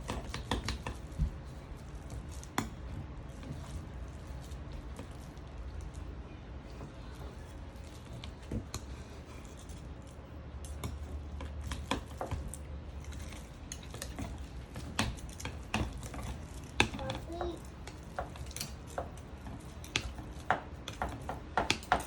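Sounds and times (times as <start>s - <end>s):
low room hum: 0.0s - 22.0s.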